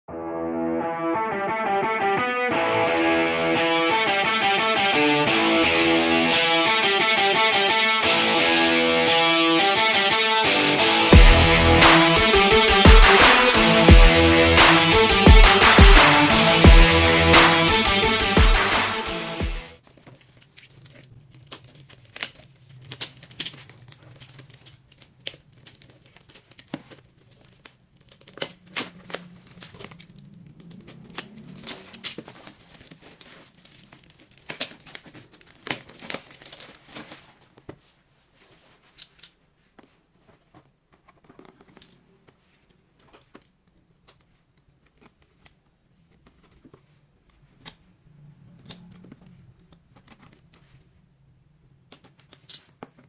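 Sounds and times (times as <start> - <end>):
plastic and paper crinkling: 19.8 - 47.9, 49.0 - 51.0, 51.9 - 53.0.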